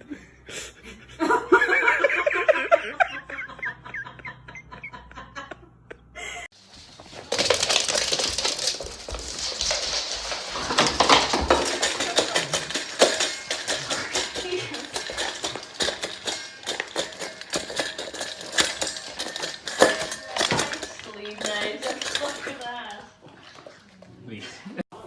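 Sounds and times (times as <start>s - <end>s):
rustling and clattering: 6.5s - 23.8s.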